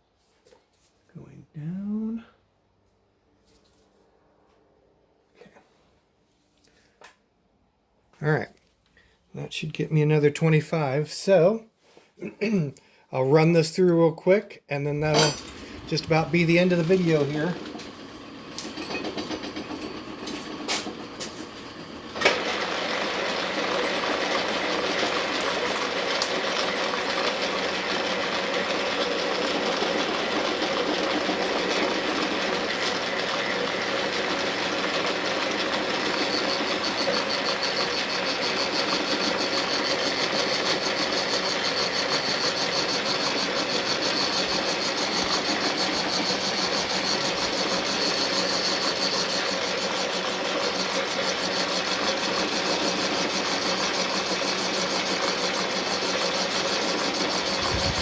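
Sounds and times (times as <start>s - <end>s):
milling machine cutting steel: 15.0s - 21.0s, 22.1s - 58.0s.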